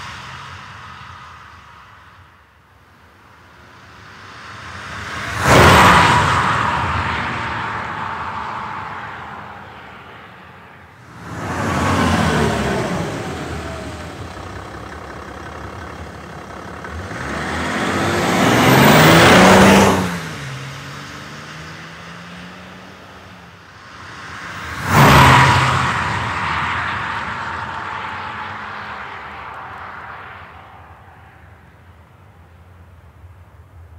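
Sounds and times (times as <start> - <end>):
car driving past: 3.4 - 31.8
low engine hum: 11.0 - 33.9.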